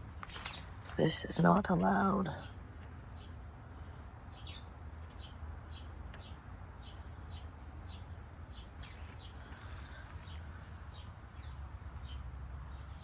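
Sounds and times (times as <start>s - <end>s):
small bird chirping: 4.3s - 13.0s.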